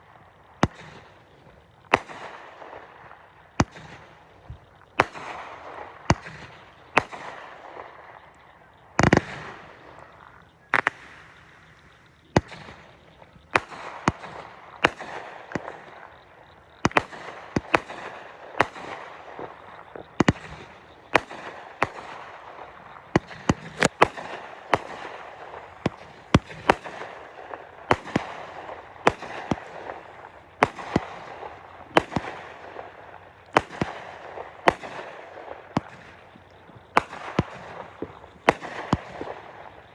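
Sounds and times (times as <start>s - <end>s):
fireworks crackling: 0.0s - 39.9s
fireworks bangs: 1.9s - 39.9s.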